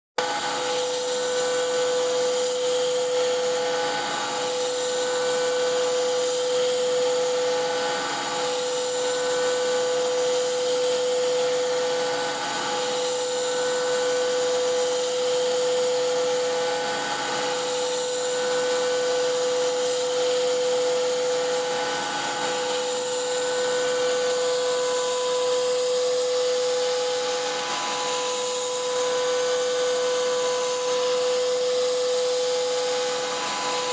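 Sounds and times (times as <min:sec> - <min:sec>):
router spindle cutting whine: 0:00.2 - 0:33.9.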